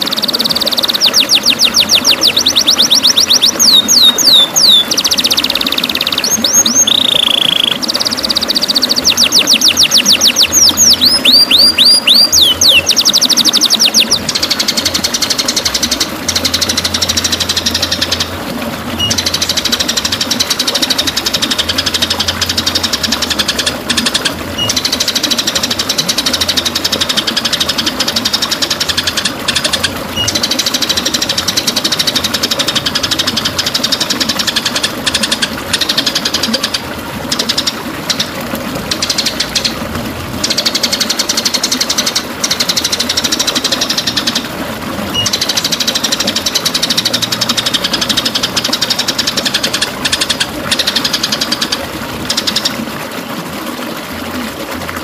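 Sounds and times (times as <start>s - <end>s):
bird whistled song: 0.0s - 18.3s, 19.0s - 20.0s, 24.6s - 25.1s, 29.5s - 30.6s, 45.1s - 46.2s
rapid rattling bird chatter: 0.0s - 18.4s, 19.0s - 39.8s, 40.4s - 44.5s, 45.1s - 52.8s.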